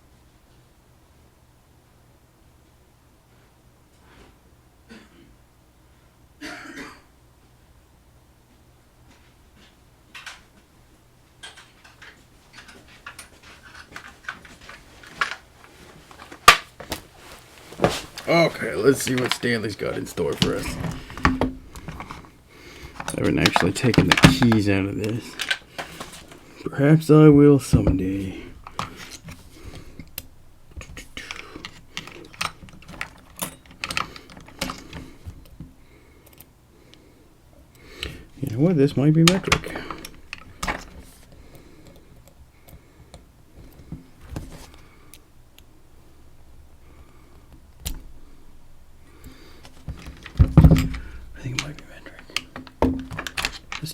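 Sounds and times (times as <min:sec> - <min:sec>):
small objects clicking and rattling: 0:11.4 - 0:15.4.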